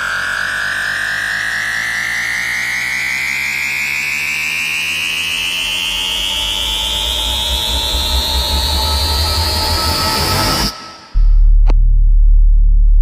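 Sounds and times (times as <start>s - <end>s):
synthesized rising tone: 0.0s - 11.7s
deep bass rumble: 6.6s - 13.0s.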